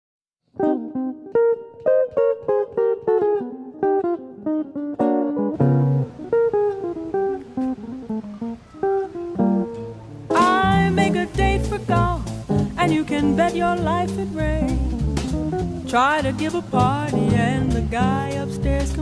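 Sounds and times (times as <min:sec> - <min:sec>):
jazz guitar playing chords: 0:00.6 - 0:19.0
bass line: 0:05.6 - 0:06.6, 0:10.4 - 0:19.0.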